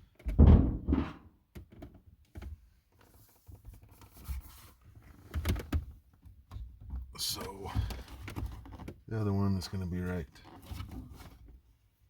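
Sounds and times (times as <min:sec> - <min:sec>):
loud knock: 0:00.4 - 0:01.2.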